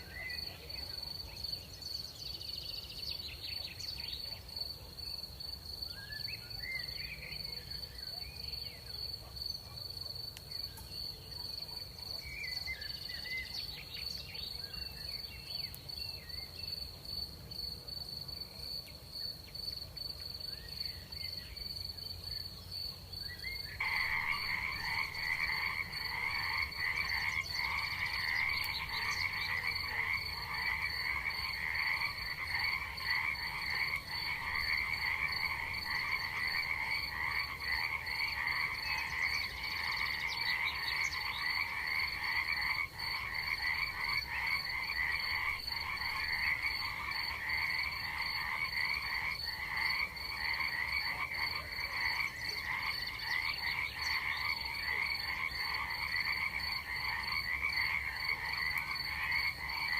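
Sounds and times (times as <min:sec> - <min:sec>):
frogs calling: 0:23.1 - 0:59.9.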